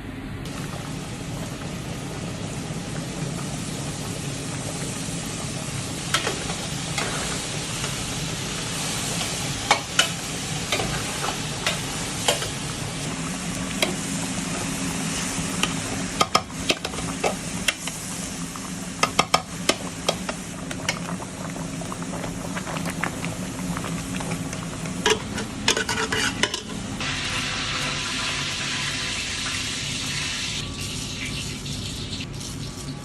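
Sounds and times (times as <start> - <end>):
food sizzling in a pan: 0.5 - 33.0
metal utensil scraping a pan: 25.1 - 26.8.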